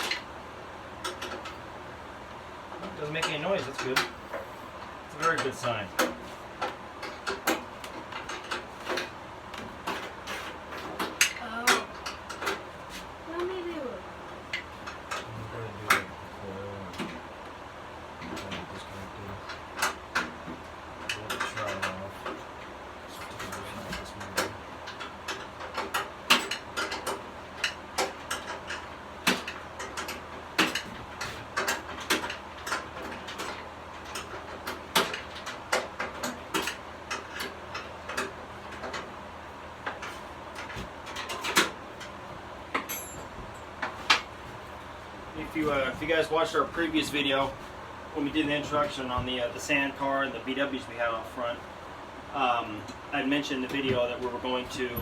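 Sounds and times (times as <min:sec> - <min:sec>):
low steady hum: 0:00.0 - 0:55.0
metal engine parts clinking: 0:19.4 - 0:39.2, 0:39.8 - 0:44.9.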